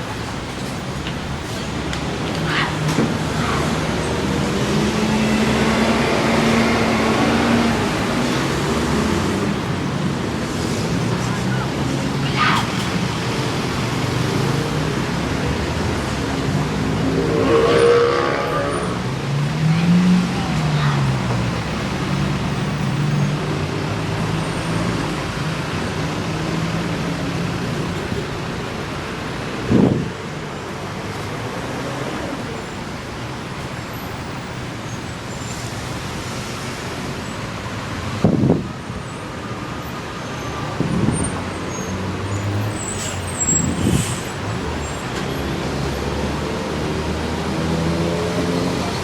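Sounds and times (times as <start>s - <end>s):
road traffic: 0.0s - 49.0s
vehicle passing by: 2.5s - 9.7s, 13.4s - 22.5s.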